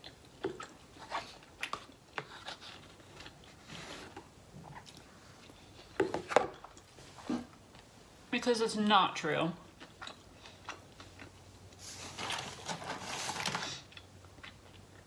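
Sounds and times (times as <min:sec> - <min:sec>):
person chewing: 0:09.7 - 0:11.8, 0:13.8 - 0:15.0.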